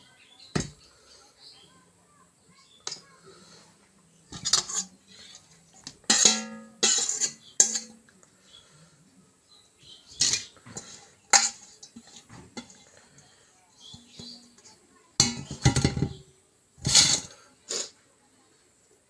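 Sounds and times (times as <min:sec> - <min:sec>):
utensils clinking on a plate: 0:04.3 - 0:08.1, 0:10.1 - 0:12.9, 0:16.8 - 0:17.9.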